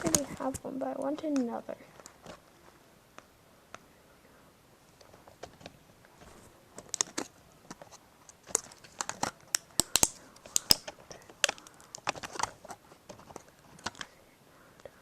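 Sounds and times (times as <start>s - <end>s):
tape crinkling: 0.0s - 2.8s, 5.0s - 14.2s
plastic clicks of handled controller: 8.5s - 14.1s.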